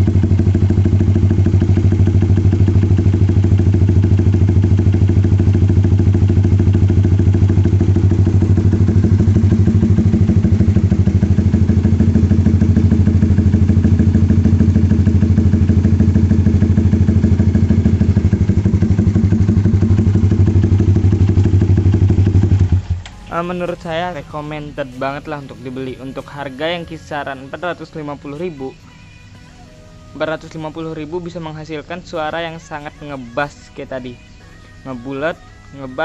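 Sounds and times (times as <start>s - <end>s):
motorcycle engine deep putter: 0.0s - 24.0s.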